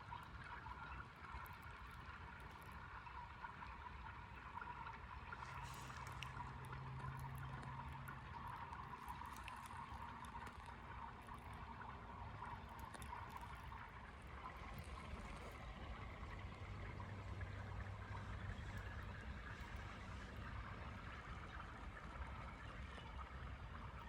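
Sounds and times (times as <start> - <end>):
small waves lapping against ice: 0.0 - 24.0
small high ticks: 5.6 - 11.8.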